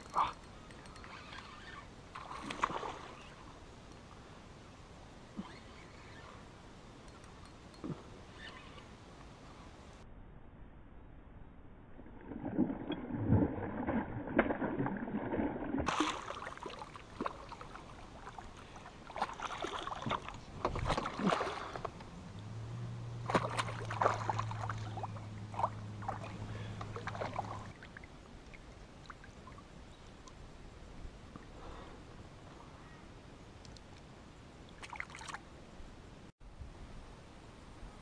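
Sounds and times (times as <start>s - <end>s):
paddle in water: 0.0s - 4.2s, 12.0s - 30.4s
low steady hum: 0.0s - 38.0s.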